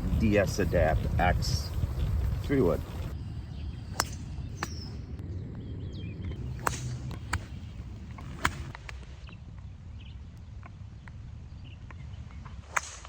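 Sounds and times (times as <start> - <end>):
wind rumble on microphone: 0.0 - 13.0
golf clubs striking balls: 3.9 - 5.0, 6.3 - 9.7, 11.8 - 13.0.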